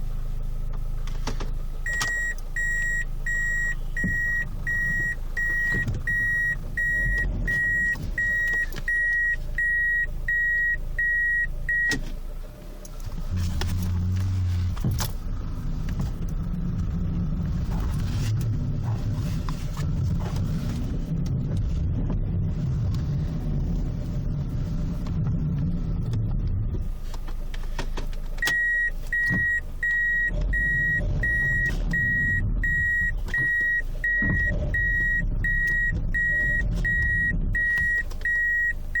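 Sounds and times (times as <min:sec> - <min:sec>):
low engine rumble: 0:00.0 - 0:39.0
reverse warning beeper: 0:01.8 - 0:12.0, 0:28.4 - 0:39.0.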